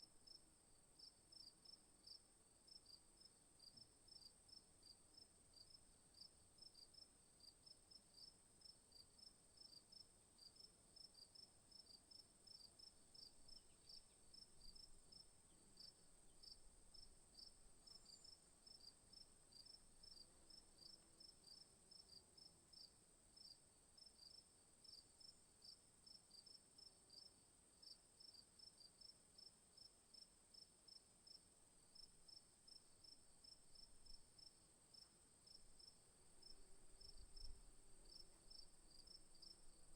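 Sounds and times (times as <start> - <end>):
crickets chirping: 11.8 - 23.6, 30.9 - 39.9.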